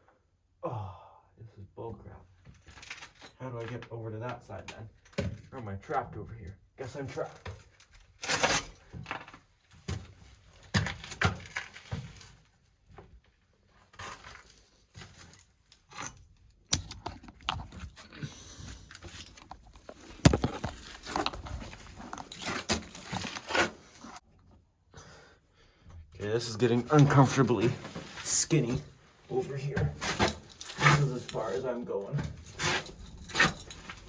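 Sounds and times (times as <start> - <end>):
person crawling scraping and crunching: 17.5 - 24.2.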